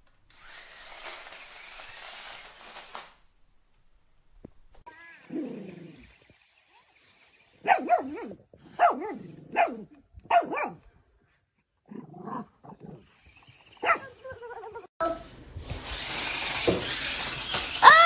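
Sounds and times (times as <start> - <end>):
dog barking: 7.6 - 10.8, 13.8 - 14.2.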